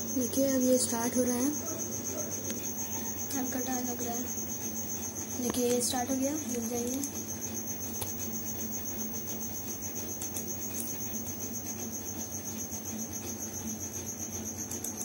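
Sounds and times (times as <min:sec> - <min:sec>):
computer fans whirring: 0:00.0 - 0:15.0
cricket trilling: 0:00.0 - 0:15.0.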